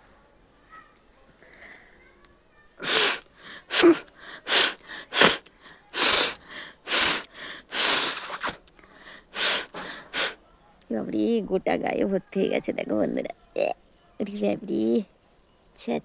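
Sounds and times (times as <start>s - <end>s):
woman blowing nose forcefully: 2.8s - 8.6s, 9.3s - 10.4s
short breaths: 2.8s - 10.4s.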